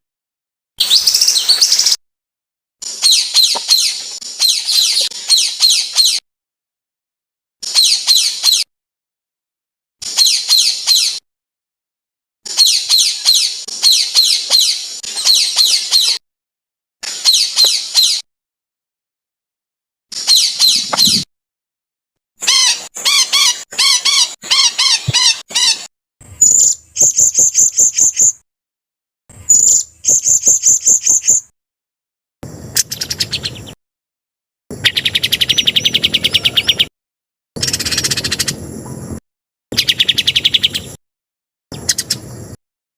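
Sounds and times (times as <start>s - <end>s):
songbird chattering song: 0.8s - 2.0s, 2.9s - 6.2s, 7.7s - 8.7s, 10.1s - 11.2s, 12.5s - 16.2s, 17.1s - 18.2s, 20.2s - 21.3s, 26.4s - 28.4s, 29.5s - 31.5s, 32.8s - 33.8s, 34.7s - 36.9s, 37.6s - 39.0s, 39.8s - 41.0s, 41.7s - 42.4s.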